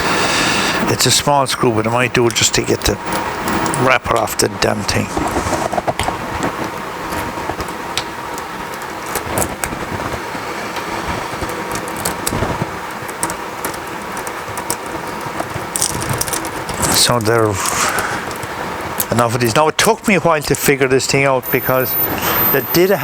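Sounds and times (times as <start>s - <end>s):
steady mechanical noise: 0.0s - 23.0s
packaging clicks and crinkles: 10.8s - 19.1s.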